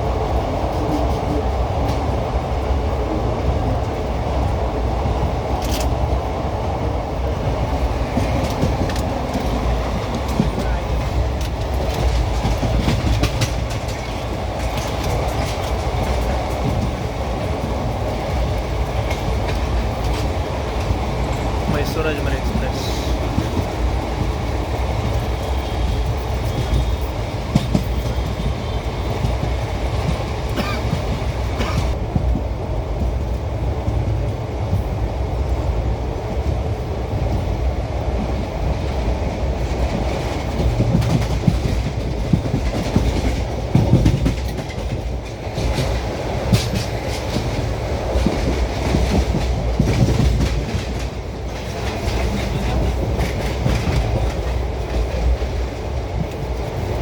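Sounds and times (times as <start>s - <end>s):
low rumble of train wheels: 0.0s - 57.0s
wheels clicking and clacking: 8.0s - 32.0s.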